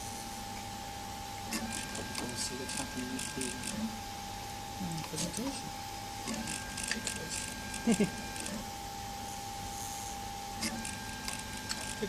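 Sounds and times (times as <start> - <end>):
printer stepper motors whining: 0.0 - 12.0.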